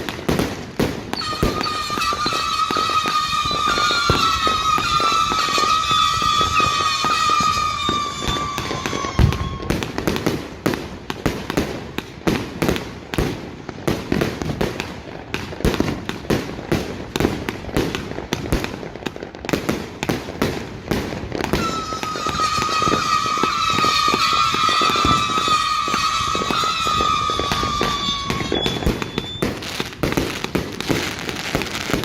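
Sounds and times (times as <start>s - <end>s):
firework bangs and crackles: 0.0s - 32.0s
shrill firework whistle: 1.0s - 10.4s, 21.0s - 32.0s.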